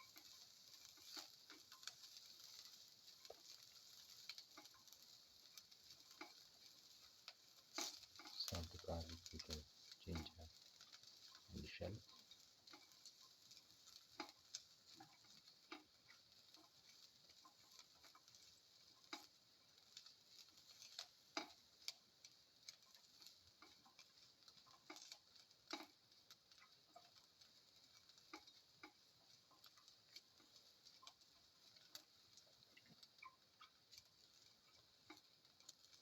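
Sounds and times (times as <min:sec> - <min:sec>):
spatula tapping a pan: 0:00.0 - 0:08.3, 0:12.1 - 0:35.9
sizzling in oil in a pan: 0:00.0 - 0:36.0.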